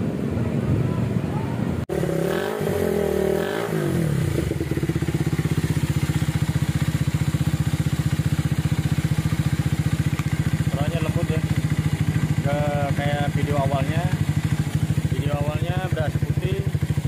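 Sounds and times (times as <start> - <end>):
motorcycle engine revving and idling: 1.9 - 17.0.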